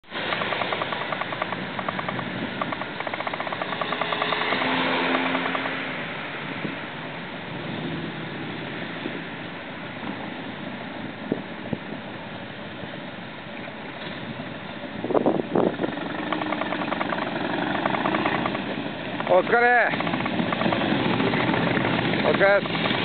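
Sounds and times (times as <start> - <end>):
motorcycle engine idling: 0.0 - 6.6, 14.9 - 23.0
wind on microphone: 15.0 - 18.8.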